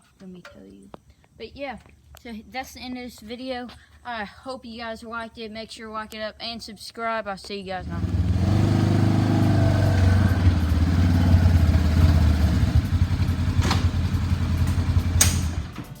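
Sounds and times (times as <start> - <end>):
vehicle engine running: 7.8 - 16.0
sharp clicks: 12.8 - 16.0.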